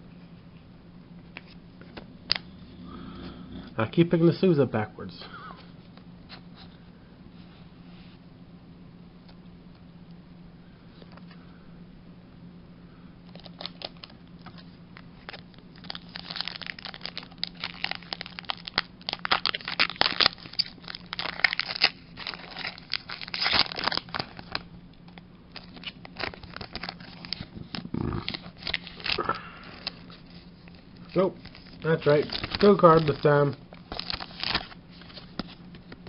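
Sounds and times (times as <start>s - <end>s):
plastic sleeves crinkling: 13.3s - 36.0s.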